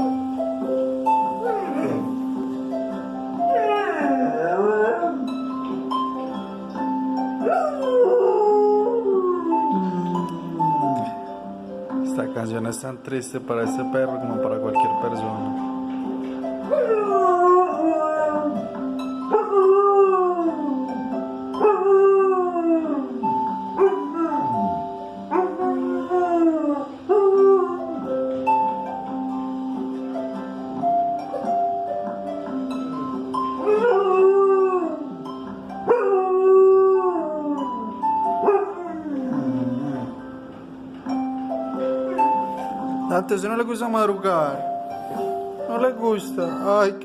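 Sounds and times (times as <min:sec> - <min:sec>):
dog howling: 0:01.4 - 0:02.2, 0:03.4 - 0:05.3, 0:07.4 - 0:11.2, 0:16.7 - 0:18.6, 0:19.3 - 0:21.0, 0:21.6 - 0:28.1, 0:33.6 - 0:35.2, 0:35.8 - 0:40.3.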